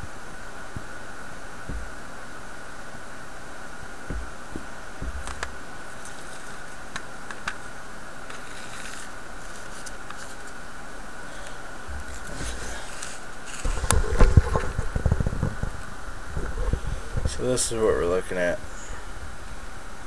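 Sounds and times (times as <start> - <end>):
steady background hiss: 0.0 - 20.0
soft knocks: 4.1 - 5.5.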